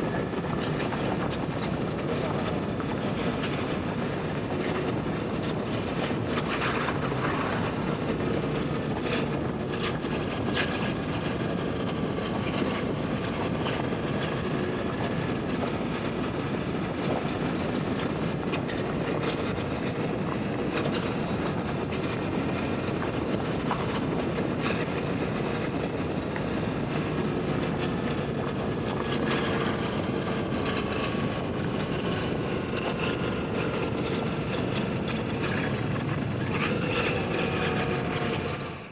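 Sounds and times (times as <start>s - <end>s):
road and wind noise: 0.0s - 38.9s.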